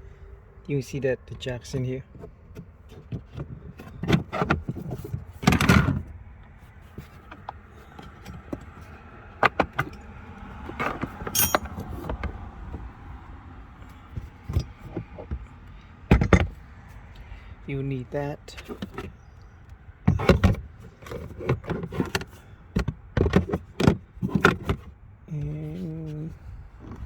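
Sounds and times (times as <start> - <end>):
car jack and tools clunking: 9.4 - 12.8, 20.1 - 24.9
short metallic jingle: 11.3 - 11.8.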